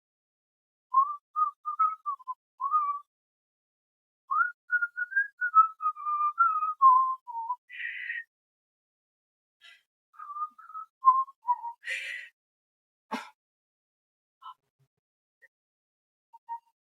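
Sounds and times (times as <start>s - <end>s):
person whistling a tune: 0.9s - 3.1s, 4.3s - 8.3s, 10.2s - 12.2s, 16.3s - 16.8s.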